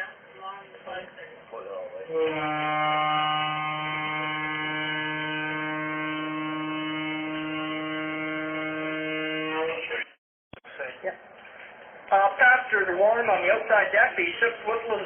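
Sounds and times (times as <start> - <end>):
ship horn blast: 2.1 - 10.0.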